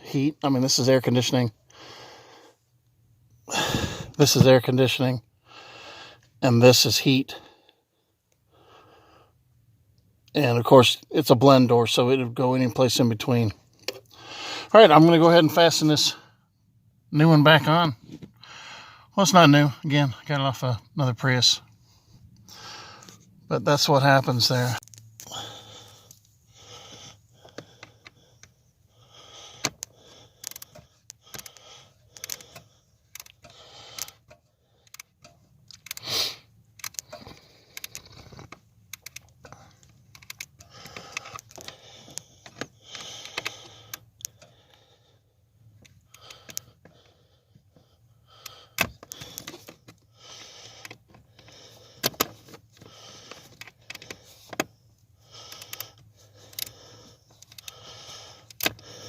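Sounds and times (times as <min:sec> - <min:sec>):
hand tools clicking and scraping: 0:29.5 - 0:44.6, 0:45.8 - 0:47.1, 0:48.4 - 0:54.7, 0:55.3 - 0:59.0.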